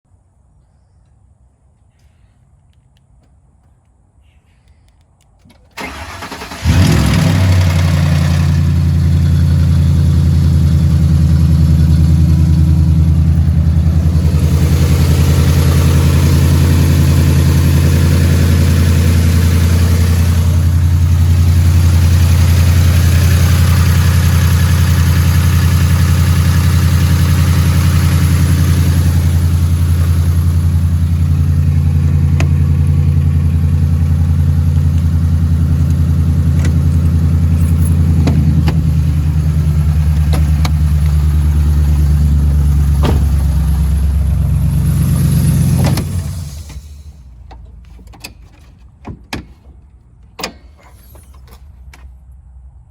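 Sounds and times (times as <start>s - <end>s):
engine starting and idling: 5.5s - 47.4s.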